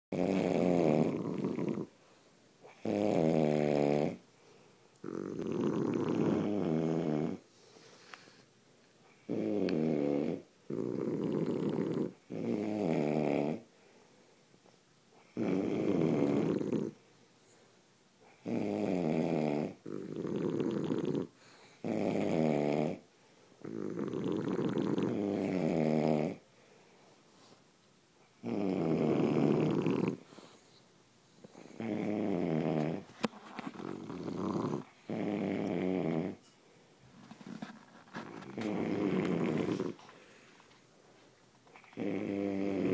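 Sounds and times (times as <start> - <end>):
dog snoring: 0.1 - 2.0, 2.6 - 4.2, 5.0 - 8.4, 9.2 - 13.7, 15.2 - 17.0, 18.3 - 23.0, 23.6 - 26.4, 28.4 - 30.7, 31.4 - 36.4, 37.4 - 40.1, 41.7 - 42.9.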